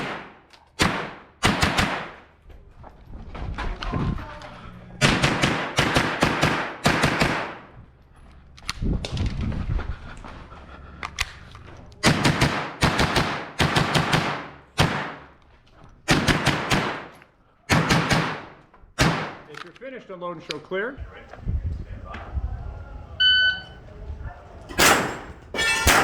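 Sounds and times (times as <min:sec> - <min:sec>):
rifle firing quick shots: 0:00.0 - 0:02.3, 0:05.0 - 0:07.7, 0:12.0 - 0:15.3, 0:16.1 - 0:17.1, 0:17.7 - 0:19.4, 0:24.7 - 0:26.0.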